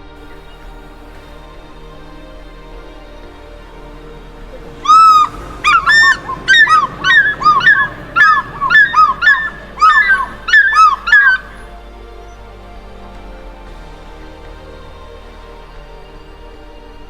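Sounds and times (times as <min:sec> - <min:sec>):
faint background music: 0:00.0 - 0:17.0
large bird calling: 0:04.7 - 0:12.5.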